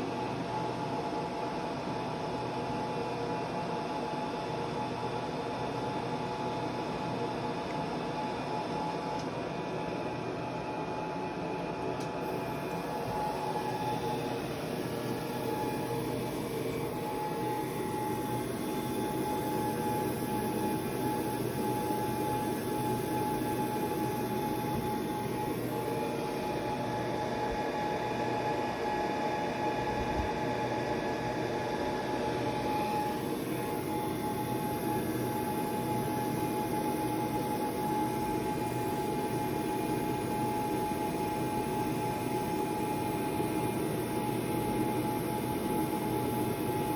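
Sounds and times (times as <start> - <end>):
thin steady whine: 0.0 - 46.9
machine whirring: 12.0 - 46.9.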